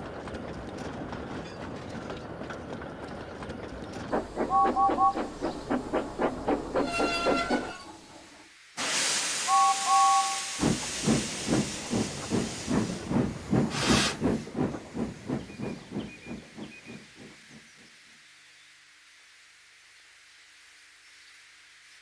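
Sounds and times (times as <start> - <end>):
steam locomotive chuffing: 3.8 - 18.0
steam hissing: 4.1 - 16.7
two-note steam whistle toots: 4.2 - 7.9, 8.8 - 12.0.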